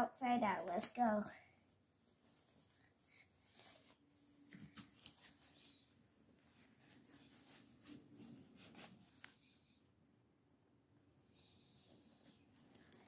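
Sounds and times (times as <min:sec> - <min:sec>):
cloth rustling and rubbing: 0:00.7 - 0:09.4.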